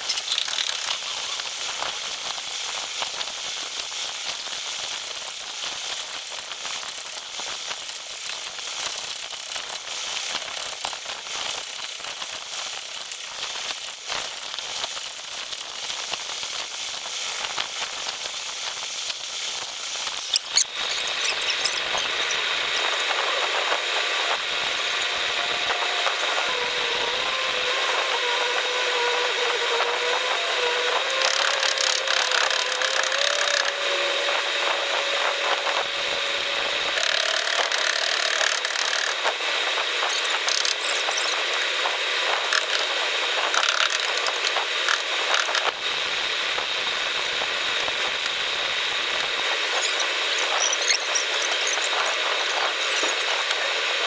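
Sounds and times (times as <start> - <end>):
scattered clicks: 0.0 - 1.1, 31.2 - 33.7
power tool whining: 20.2 - 54.0.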